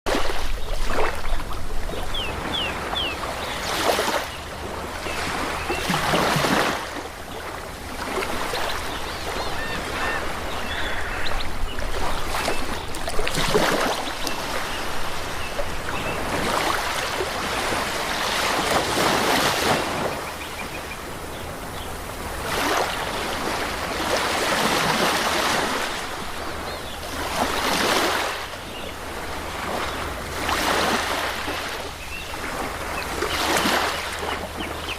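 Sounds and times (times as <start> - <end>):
sea waves breaking on shore: 0.1 - 34.9.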